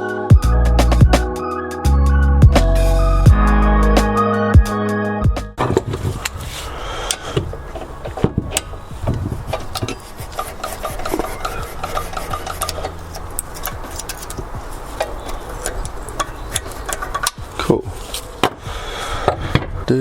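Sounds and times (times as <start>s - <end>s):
hand tools clicking on metal: 9.5s - 18.3s.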